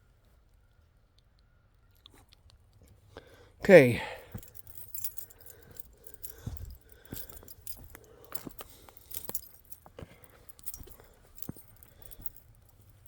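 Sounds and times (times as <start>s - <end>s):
light jingling: 3.7s - 13.0s
footsteps on woodland floor: 4.4s - 12.4s.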